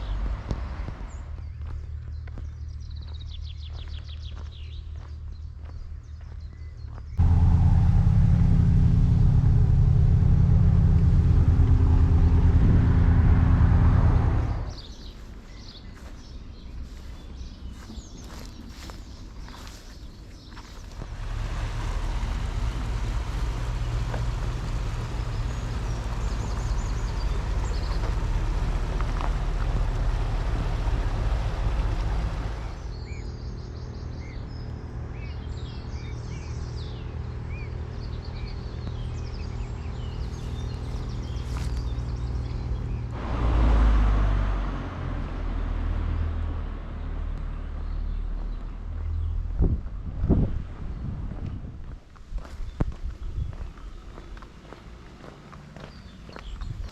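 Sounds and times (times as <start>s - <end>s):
birds chirping: 0.0s - 43.2s, 52.4s - 56.9s
low rumble: 7.1s - 19.8s, 20.4s - 36.7s, 39.2s - 54.4s
low wind gust: 7.2s - 15.4s, 20.3s - 33.1s.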